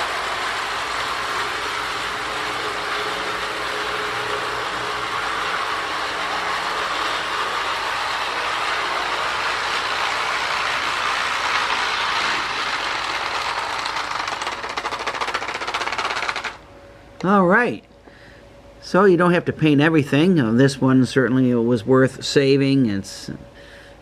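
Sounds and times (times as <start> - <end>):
toy train running on track: 0.0 - 16.6.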